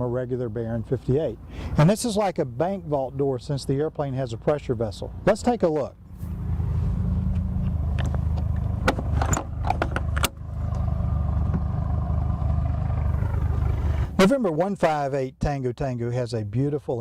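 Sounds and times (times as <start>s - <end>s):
low mechanical hum: 5.9s - 14.2s.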